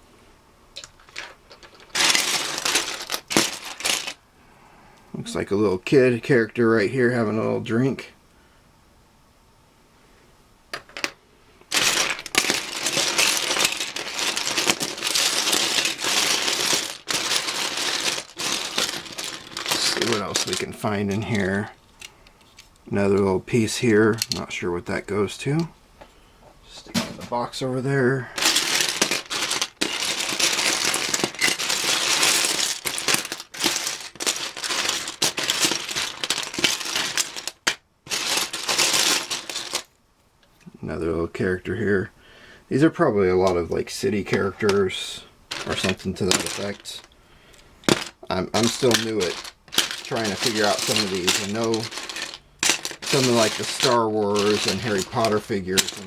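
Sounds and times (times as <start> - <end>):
plastic bricks rattling: 0.8 - 4.2, 10.8 - 21.7, 24.0 - 24.5, 28.4 - 40.0, 44.2 - 56.0
plastic bricks clicking: 10.8 - 21.4, 28.4 - 39.9, 47.8 - 56.0.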